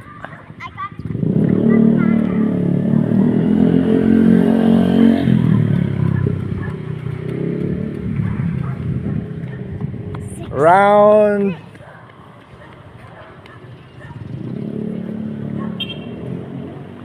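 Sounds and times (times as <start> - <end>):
vehicle engine running: 0.7 - 11.4.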